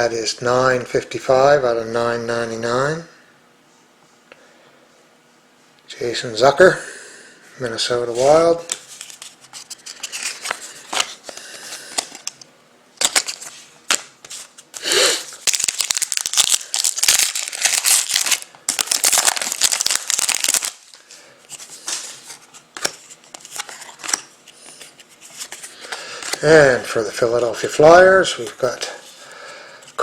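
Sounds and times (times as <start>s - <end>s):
trading cards sliding and rustling: 8.1s - 12.3s, 13.0s - 20.7s, 21.5s - 26.4s.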